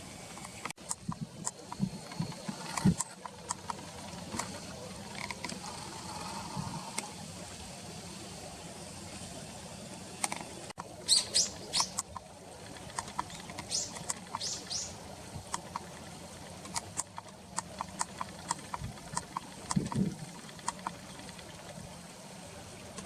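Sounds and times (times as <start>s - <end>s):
sharp bird ticks: 10.2s - 21.8s
small birds calling: 10.8s - 15.1s.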